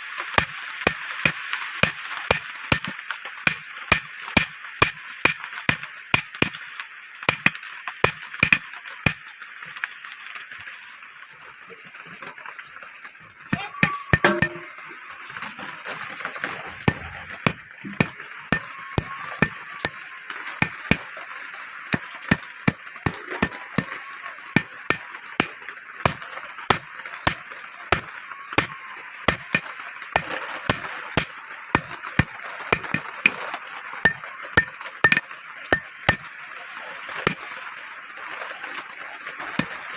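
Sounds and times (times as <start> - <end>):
hammer striking iron on anvil: 3.5 - 5.0, 8.4 - 9.2, 13.8 - 14.7, 34.1 - 35.2.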